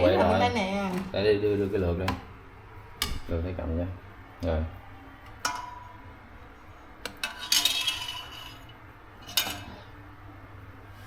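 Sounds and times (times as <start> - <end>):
metal utensils clinking: 5.3 - 6.0, 7.0 - 9.9.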